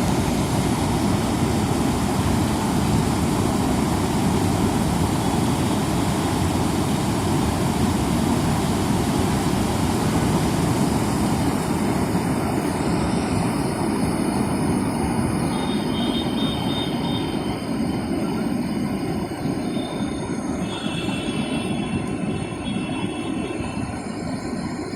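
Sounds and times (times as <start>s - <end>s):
fast-flowing river water rushing: 0.0s - 20.1s
faint high whistling tones: 14.3s - 24.9s.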